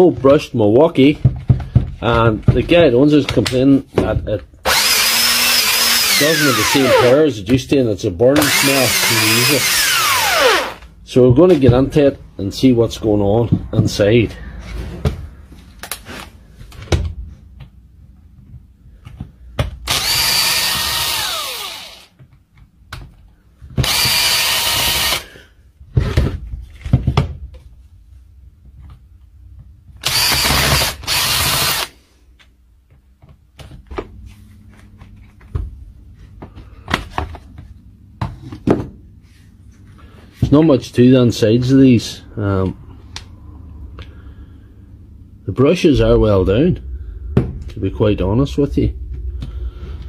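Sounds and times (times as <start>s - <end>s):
cordless drill whirring: 4.6s - 7.2s, 8.4s - 10.8s, 19.8s - 22.1s, 23.8s - 25.3s, 30.0s - 31.9s.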